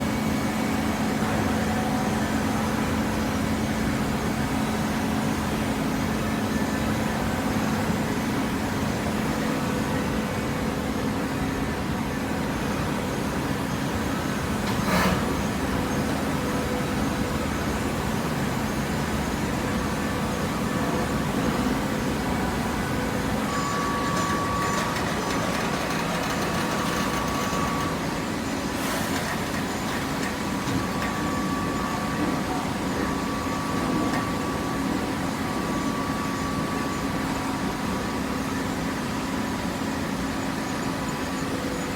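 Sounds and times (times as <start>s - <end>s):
baler machine hum: 12.5s - 38.6s.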